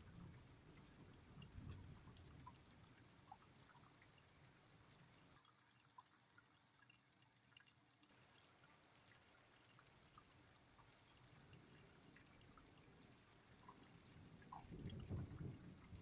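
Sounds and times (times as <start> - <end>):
light rain hissing: 0.0 - 16.0
water drips: 0.0 - 16.0.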